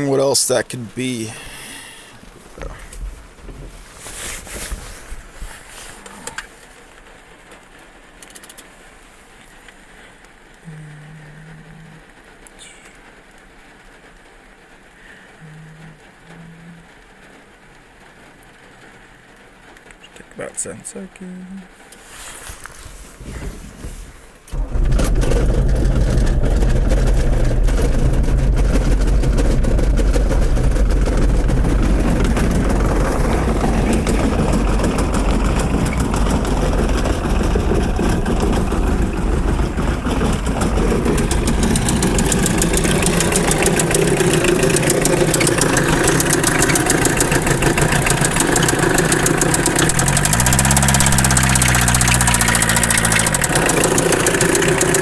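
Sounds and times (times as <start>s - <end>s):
diesel engine starting and idling: 0.0s - 3.1s, 24.5s - 55.0s
engine revving: 24.5s - 55.0s.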